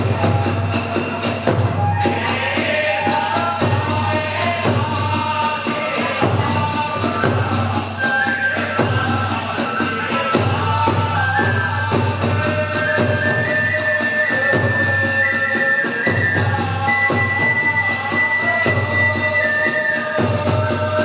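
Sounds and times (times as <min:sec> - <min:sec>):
drum beat: 0:00.0 - 0:15.0.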